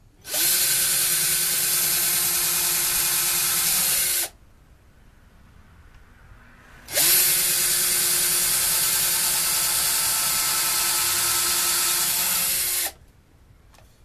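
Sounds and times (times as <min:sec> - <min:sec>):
power drill drilling into wood: 0:00.2 - 0:04.3, 0:06.9 - 0:13.0.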